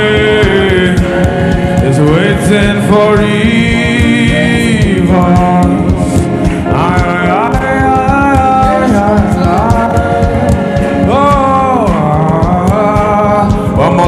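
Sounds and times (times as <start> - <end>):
gospel choir singing: 0.0 - 14.0
rhythmic accompaniment: 0.0 - 14.0.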